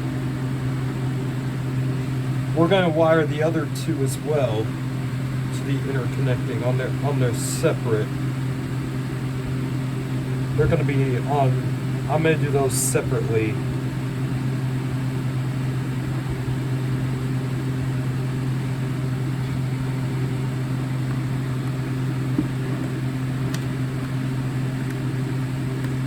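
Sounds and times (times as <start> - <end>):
machinery humming: 0.0 - 26.0.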